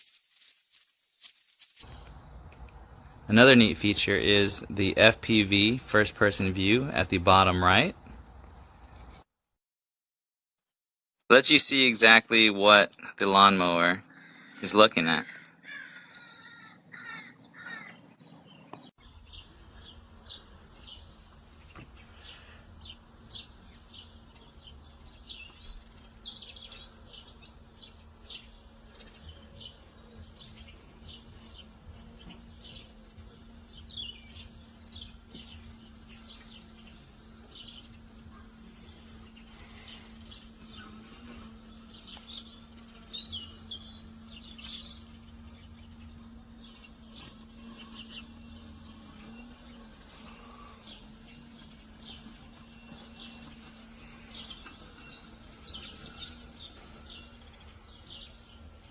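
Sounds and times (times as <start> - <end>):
small birds chirping: 1.8 - 9.2, 14.1 - 58.9
steady low hum: 1.8 - 9.2.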